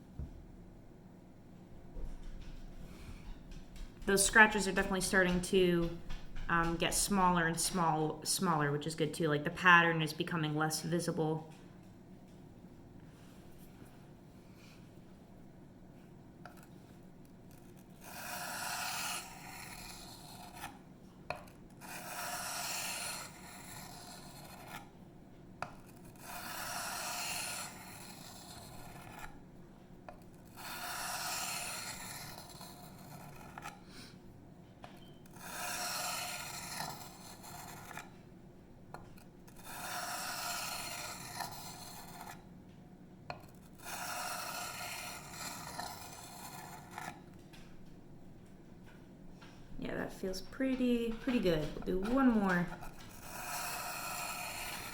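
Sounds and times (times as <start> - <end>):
knife scraping on sharpening stone: 17.5 - 20.7, 21.4 - 24.8, 25.8 - 29.3, 30.5 - 33.8, 35.0 - 38.1, 39.5 - 42.4, 43.4 - 47.2, 52.8 - 54.9.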